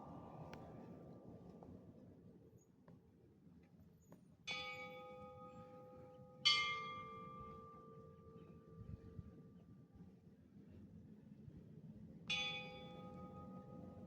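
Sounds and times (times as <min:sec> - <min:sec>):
church bells ringing: 0:04.5 - 0:08.0, 0:12.3 - 0:14.0.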